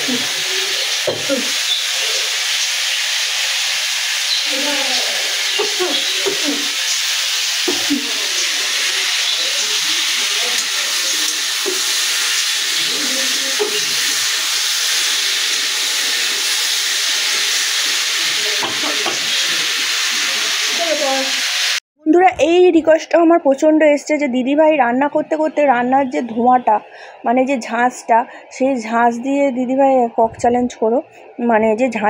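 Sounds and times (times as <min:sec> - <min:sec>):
curry sizzling in a pan: 0:00.0 - 0:21.8.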